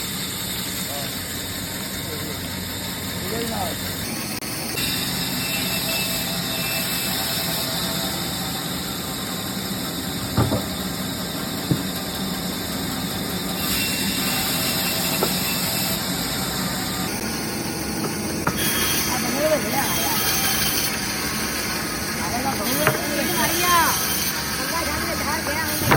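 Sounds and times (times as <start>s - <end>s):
wood-cutting machinery humming: 0.0s - 25.9s
sharp knocks: 10.2s - 10.8s, 11.6s - 12.0s, 15.2s - 15.6s, 18.0s - 18.8s.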